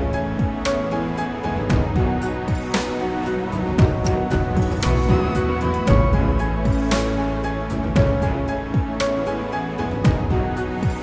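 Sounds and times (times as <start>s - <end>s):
sustained synth chords: 0.0s - 11.0s
sharp percussion hits: 1.6s - 9.2s
deep falling kick drum: 3.8s - 9.0s.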